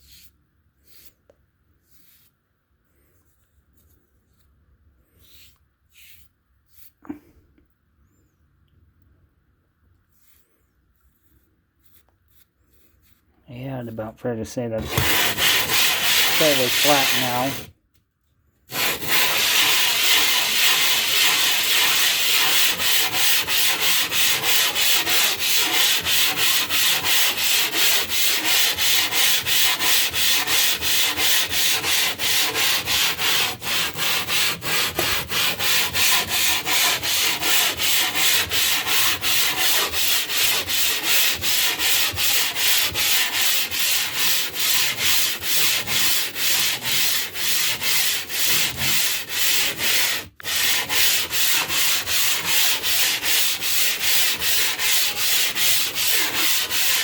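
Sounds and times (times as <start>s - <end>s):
stone block scraping: 14.8s - 17.7s, 18.7s - 57.0s.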